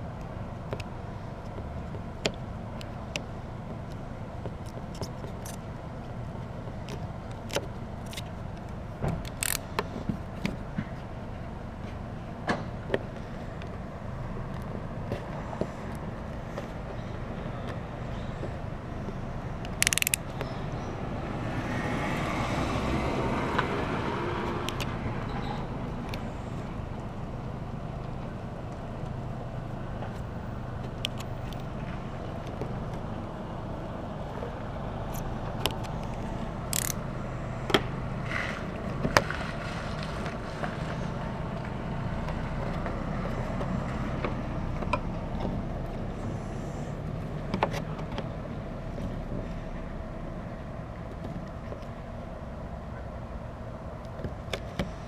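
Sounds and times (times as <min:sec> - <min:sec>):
steady low hum: 0:00.0 - 0:55.0
tool clicks and taps: 0:19.7 - 0:20.5, 0:36.7 - 0:37.0.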